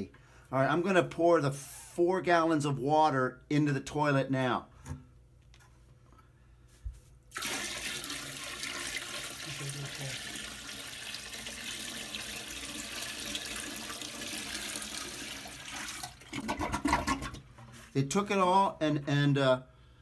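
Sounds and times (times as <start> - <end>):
water pouring into toilet bowl: 7.3 - 17.5.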